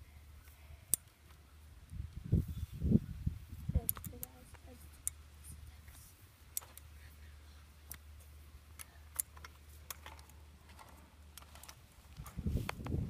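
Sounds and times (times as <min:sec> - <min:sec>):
low steady hum: 0:00.0 - 0:13.0
faint clicks and ticks: 0:03.8 - 0:07.0.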